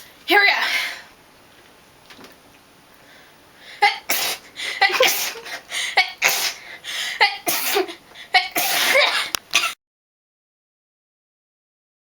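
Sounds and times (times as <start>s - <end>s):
girl sneezing: 3.8s - 9.8s.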